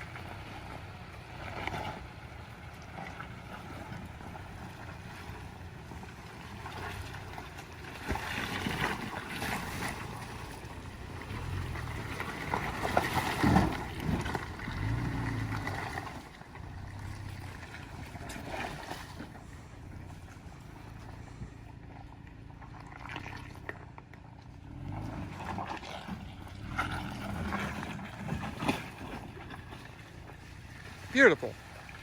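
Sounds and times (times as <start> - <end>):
pickup engine running at low revs: 0.0 - 32.0.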